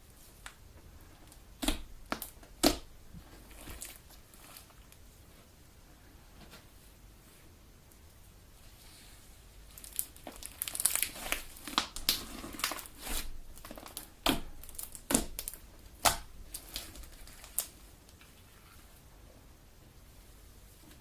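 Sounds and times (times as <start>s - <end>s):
slime squishing: 0.4s - 5.0s, 9.7s - 18.6s
slime popping and crackling: 1.3s - 4.7s, 9.7s - 17.8s.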